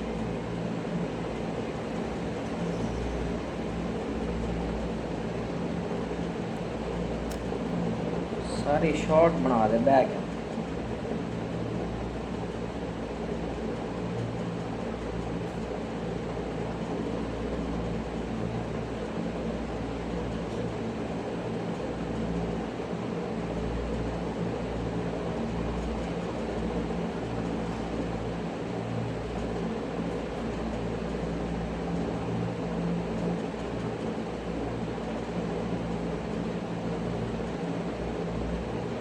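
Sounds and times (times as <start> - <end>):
mechanical hum with low drone: 0.0 - 39.0.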